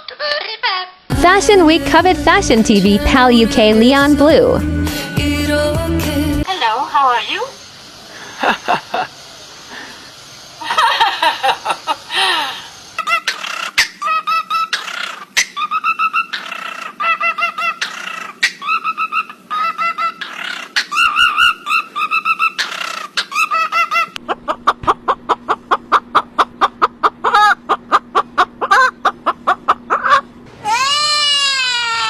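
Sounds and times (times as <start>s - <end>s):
steady low hum: 1.1s - 32.0s
bird calls: 7.1s - 32.0s.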